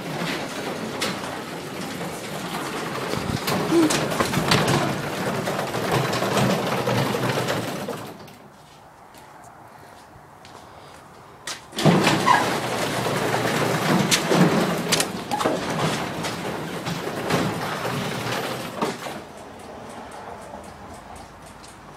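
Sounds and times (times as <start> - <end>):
garage door rattling on opener: 0.0 - 8.4, 11.7 - 19.5.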